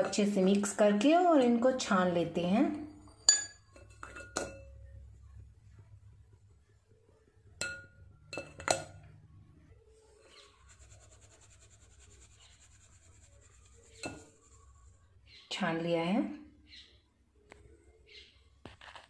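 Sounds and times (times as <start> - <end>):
utensils clinking against glass bowl: 3.0 - 4.9, 7.6 - 9.0, 13.9 - 14.4.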